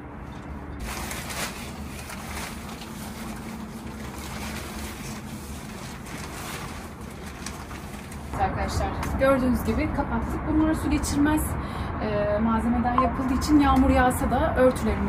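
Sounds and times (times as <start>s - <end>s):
fabric covers rustling: 0.8s - 8.4s.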